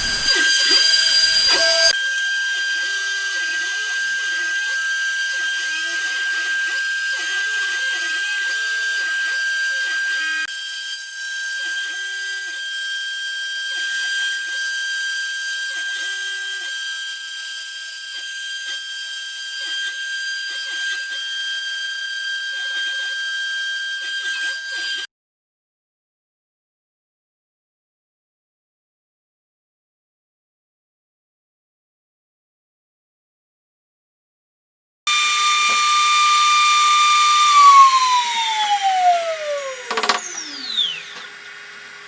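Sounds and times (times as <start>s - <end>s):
stepper motors humming: 0.0s - 2.0s, 35.1s - 42.0s
router spindle whine: 0.0s - 25.1s, 35.1s - 42.0s.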